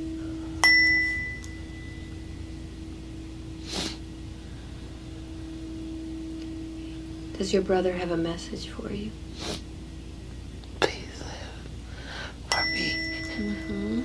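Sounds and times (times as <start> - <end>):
tuning fork ringing: 0.0 - 10.4, 12.2 - 14.0
steady low tone: 0.0 - 14.0
short breath: 11.9 - 12.4.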